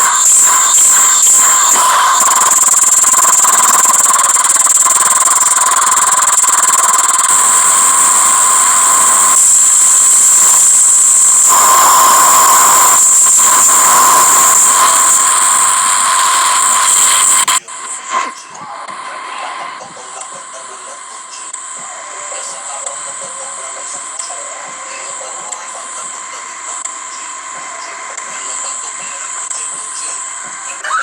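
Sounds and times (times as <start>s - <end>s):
high-pitched whistling tones: 0.0s - 17.6s
harsh electronic noise: 0.0s - 24.2s.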